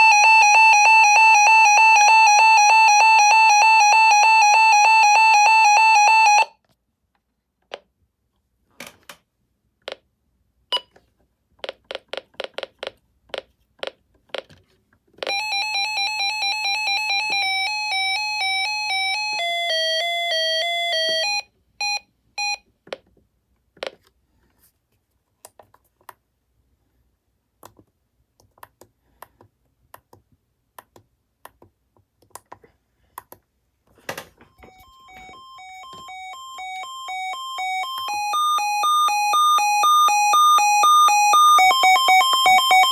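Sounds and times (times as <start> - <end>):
electronic siren beeping: 0.0 - 6.5, 34.6 - 42.9
alternating high-low siren tone: 34.6 - 42.9.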